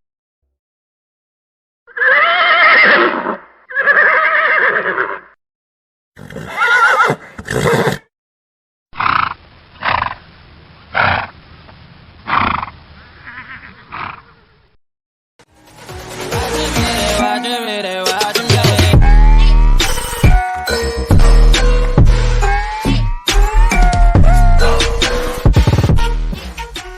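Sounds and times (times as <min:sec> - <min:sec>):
horse neighing: 0:01.9 - 0:05.4, 0:06.2 - 0:08.1, 0:12.3 - 0:14.6.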